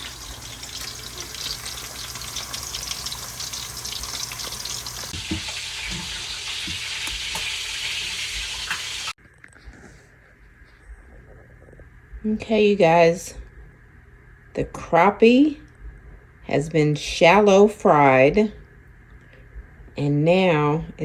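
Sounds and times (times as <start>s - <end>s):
food sizzling in hot oil: 0.0s - 9.2s.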